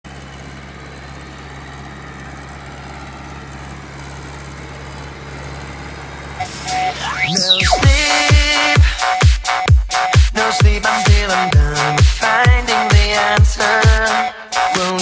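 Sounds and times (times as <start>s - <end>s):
tractor diesel engine humming: 0.1s - 9.6s
electronic music: 6.4s - 15.0s.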